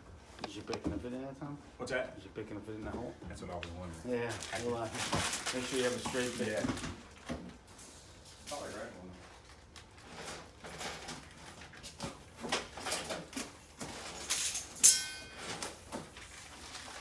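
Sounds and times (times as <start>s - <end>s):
sharp metal clink: 14.8s - 15.4s.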